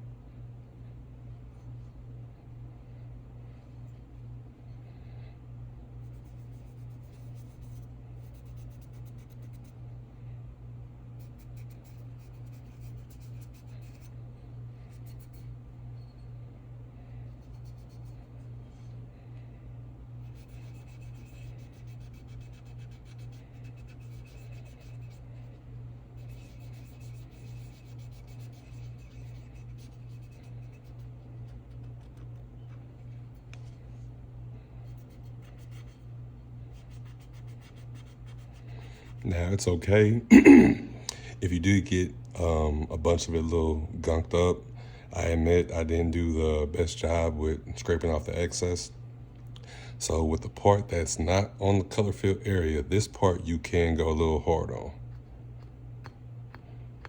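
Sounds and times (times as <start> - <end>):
steady low hum: 0.0 - 57.0
light rubbing strokes: 20.2 - 25.6, 26.2 - 34.1.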